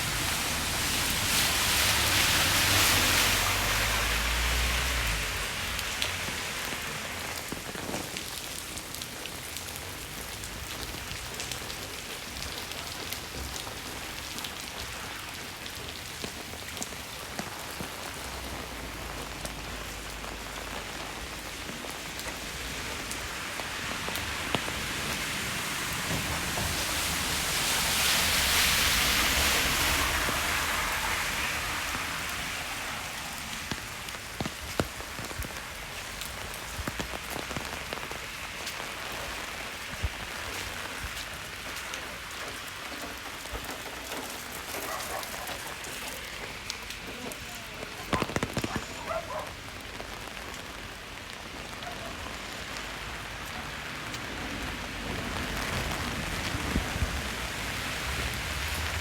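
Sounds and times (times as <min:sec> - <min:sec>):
rain on a street: 0:00.0 - 0:59.0.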